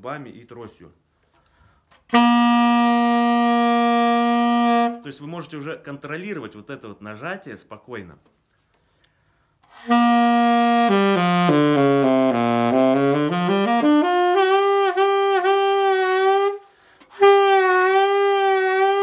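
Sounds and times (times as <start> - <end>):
saxophone with vibrato: 2.0 - 5.0, 9.7 - 19.0.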